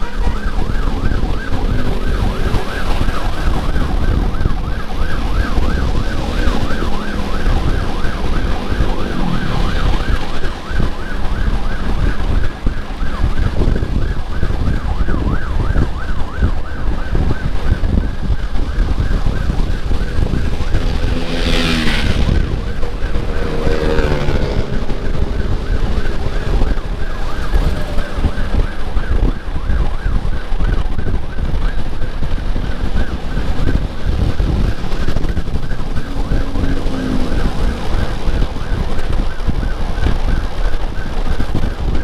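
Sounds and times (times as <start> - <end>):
engine and wind rumble: 0.0 - 42.0
warbling siren: 0.0 - 42.0.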